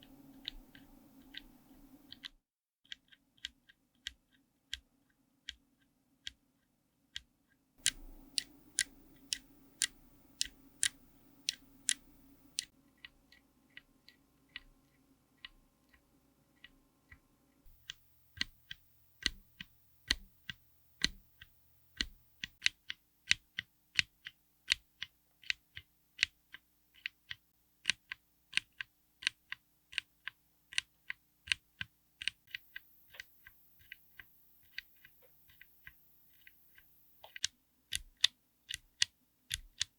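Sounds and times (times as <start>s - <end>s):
mechanical keyboard keystroke clicks: 7.8s - 12.7s, 17.8s - 23.4s.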